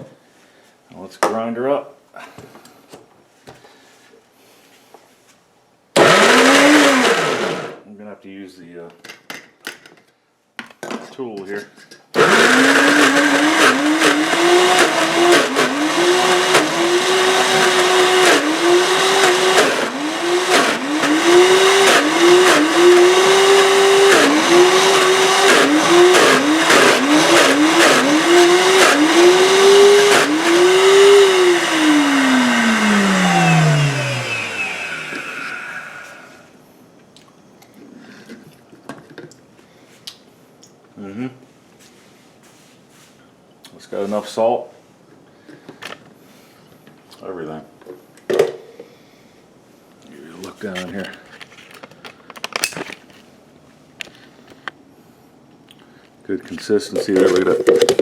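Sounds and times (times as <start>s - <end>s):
blender motor running: 6.0s - 7.8s, 12.2s - 36.5s.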